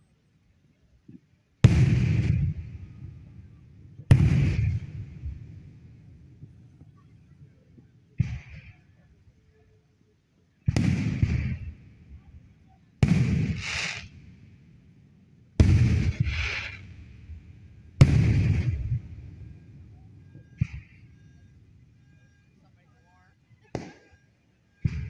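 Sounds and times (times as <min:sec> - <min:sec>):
fireworks bangs: 0:01.6 - 0:08.9, 0:10.6 - 0:12.4, 0:13.0 - 0:14.5, 0:15.6 - 0:22.4, 0:23.6 - 0:25.0.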